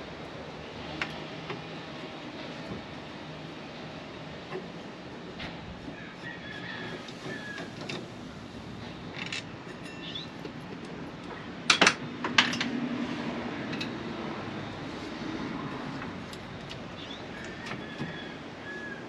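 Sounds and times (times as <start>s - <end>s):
metal tools clinking: 9.2s - 10.6s.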